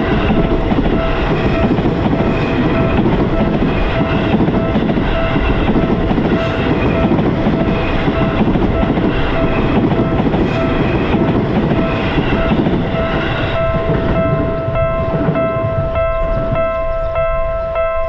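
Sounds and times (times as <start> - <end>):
passing train rumble: 0.0 - 18.0
level crossing bell ringing: 13.0 - 18.0.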